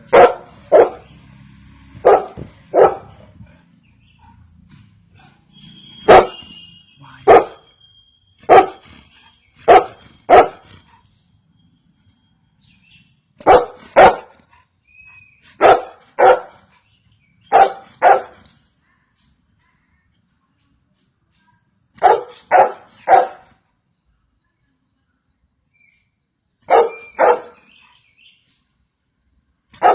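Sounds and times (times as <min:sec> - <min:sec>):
dog barking: 0:00.0 - 0:01.1, 0:02.0 - 0:03.4, 0:06.0 - 0:06.5, 0:07.2 - 0:07.7, 0:08.4 - 0:08.8, 0:09.6 - 0:10.6, 0:13.4 - 0:14.4, 0:15.6 - 0:16.7, 0:17.4 - 0:18.4, 0:22.0 - 0:23.6, 0:26.7 - 0:27.8.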